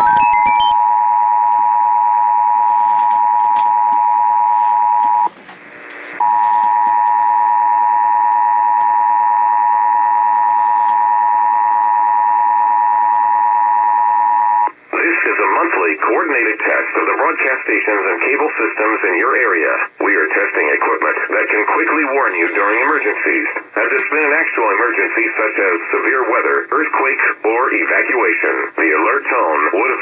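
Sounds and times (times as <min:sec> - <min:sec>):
two-tone alert tone: 0:00.0 - 0:00.8.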